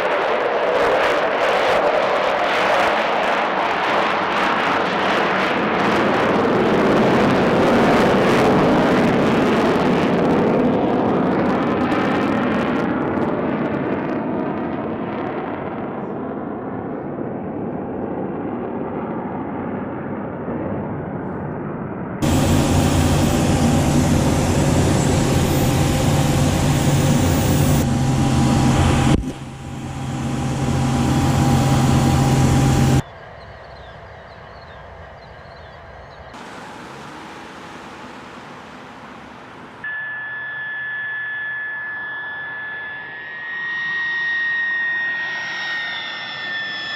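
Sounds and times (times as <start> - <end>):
jet engine: 0.0 - 46.9
high steady engine whine: 22.2 - 46.9.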